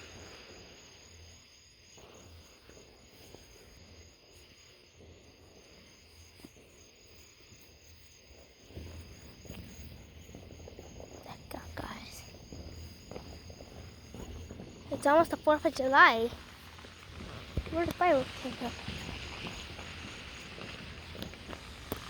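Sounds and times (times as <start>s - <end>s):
crickets trilling: 0.0s - 22.0s
low rustling: 8.8s - 22.0s.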